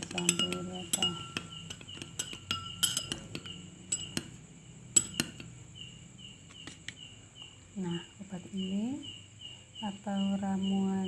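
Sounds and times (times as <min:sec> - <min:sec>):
spoon clinking against dish: 0:00.0 - 0:05.6.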